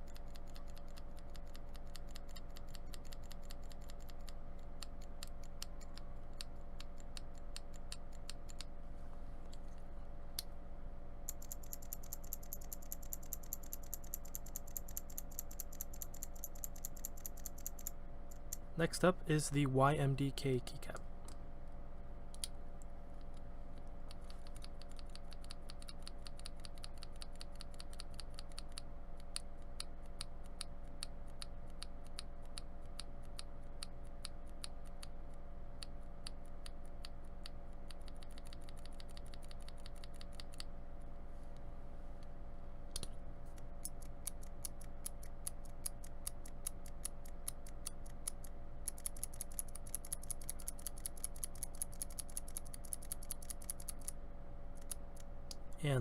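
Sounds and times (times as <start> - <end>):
rapid keyboard typing: 0.0 - 8.7, 11.3 - 18.6, 24.1 - 29.4, 37.9 - 40.7, 43.8 - 54.2
steady low hum: 0.0 - 56.0.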